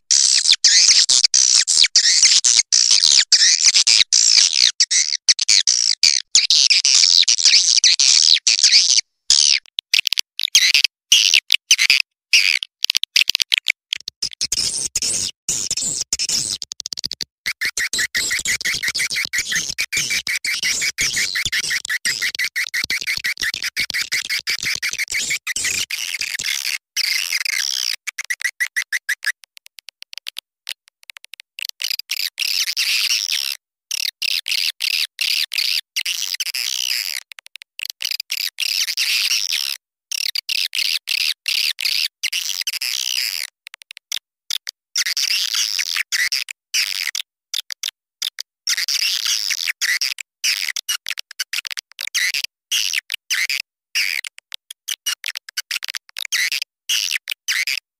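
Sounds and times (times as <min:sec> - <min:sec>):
swiftlets chirping and twittering: 0:17.5 - 0:26.4.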